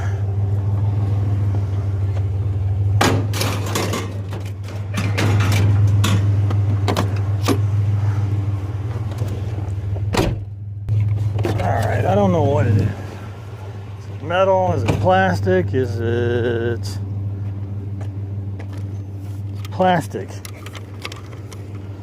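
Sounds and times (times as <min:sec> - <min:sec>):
truck engine idling: 0:00.0 - 0:22.0.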